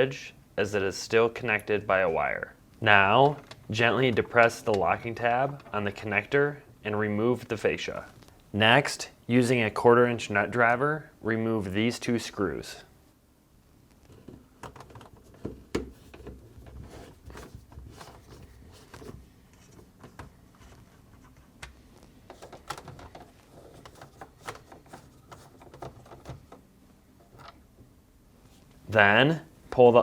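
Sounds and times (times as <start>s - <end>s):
plastic parts being handled: 13.9s - 27.8s.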